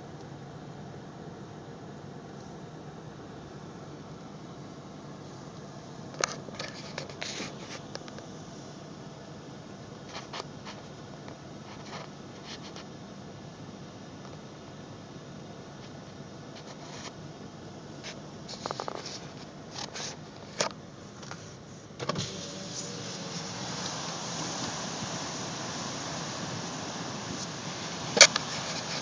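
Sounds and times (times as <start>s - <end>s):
wind: 0.0s - 29.0s
ocean surf: 23.0s - 29.0s.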